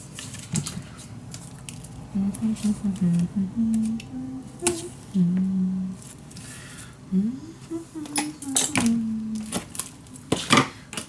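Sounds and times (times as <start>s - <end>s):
woman humming: 2.2s - 6.1s, 7.1s - 10.2s.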